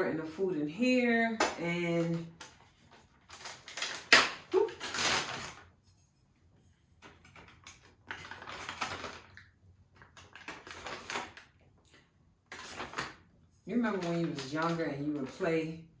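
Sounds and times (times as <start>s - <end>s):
plastic bag crinkling: 1.6s - 5.8s, 7.0s - 11.6s, 12.5s - 15.5s.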